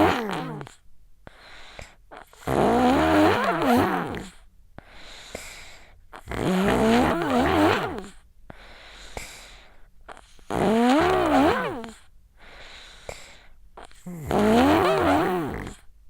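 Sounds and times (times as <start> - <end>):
child snoring: 0.0 - 0.8, 1.9 - 4.5, 5.3 - 8.2, 10.1 - 12.1, 12.9 - 15.9.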